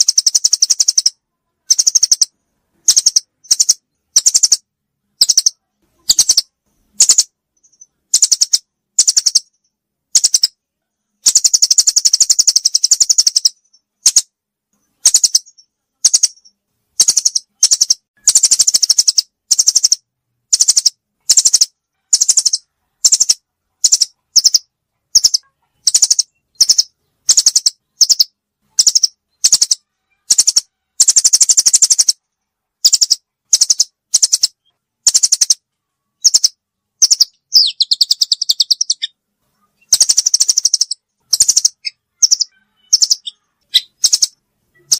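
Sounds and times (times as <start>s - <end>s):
bird high-pitched trills: 0.0s - 4.6s, 15.0s - 32.2s, 36.2s - 39.2s, 39.8s - 44.9s.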